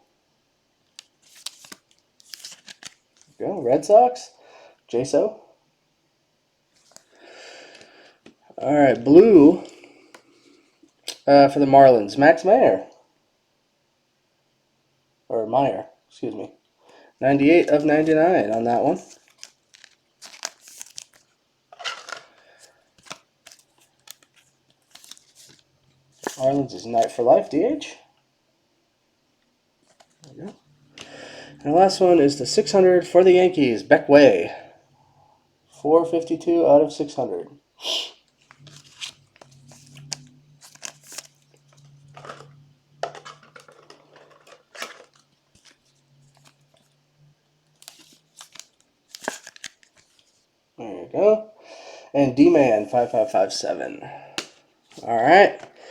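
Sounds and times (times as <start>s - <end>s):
packaging crinkling and rustling: 1.0s - 3.4s, 6.7s - 7.1s, 17.6s - 26.4s, 29.8s - 30.3s, 38.3s - 47.0s, 47.7s - 50.4s.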